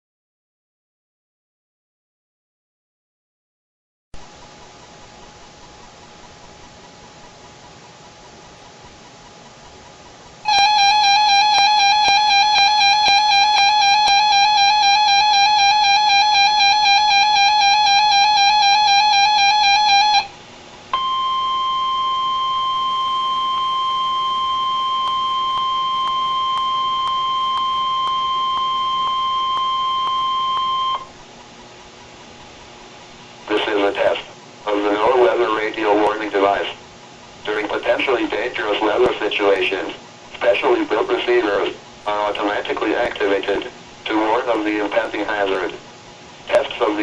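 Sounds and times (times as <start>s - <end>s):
warbling electronic alarm tone: 10.4s - 20.4s, 21.0s - 31.2s
steady warning alarm tone: 10.4s - 31.7s.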